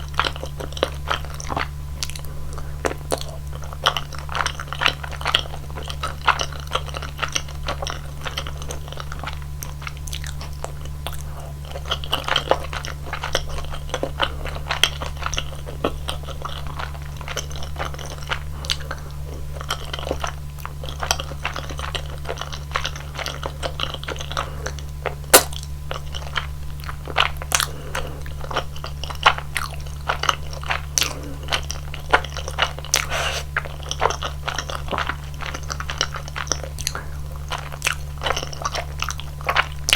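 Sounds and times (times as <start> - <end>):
wet chewing and biting: 19.6 - 39.9.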